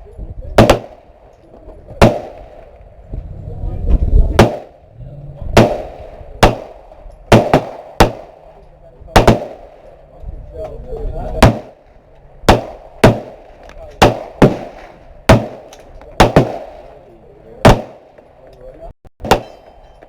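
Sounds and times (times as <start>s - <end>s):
gunshots with echo: 0.6s - 1.3s, 2.0s - 2.8s, 4.2s - 4.9s, 5.5s - 10.0s, 11.3s - 18.4s, 19.2s - 19.8s.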